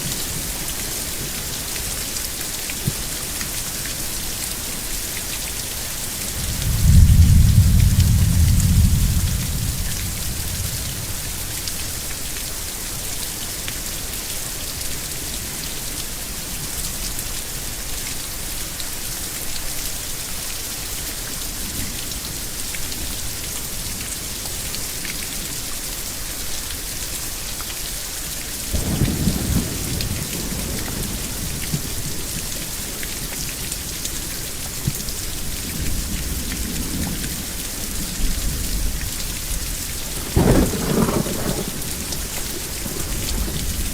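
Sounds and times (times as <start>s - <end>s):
heavy rain: 0.0s - 43.9s
thunder rumbling: 6.3s - 12.0s, 28.7s - 33.3s, 35.7s - 43.9s
thunder clap: 6.4s - 11.6s, 28.7s - 32.5s, 40.2s - 43.9s.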